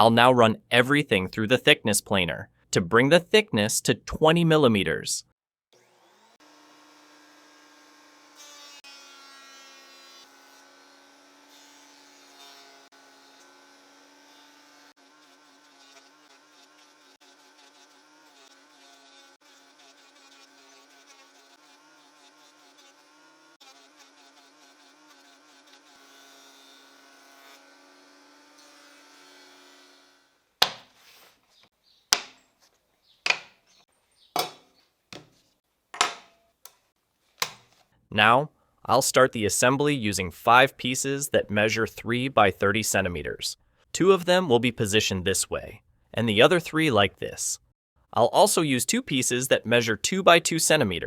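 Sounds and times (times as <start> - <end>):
sharp wooden knocks: 30.6 - 30.9, 32.1 - 32.4, 33.2 - 33.6.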